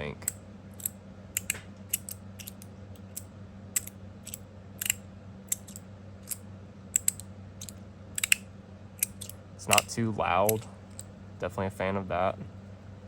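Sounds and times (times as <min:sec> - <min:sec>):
low hum: 0:00.0 - 0:13.0
metal plates clicking: 0:08.2 - 0:08.4.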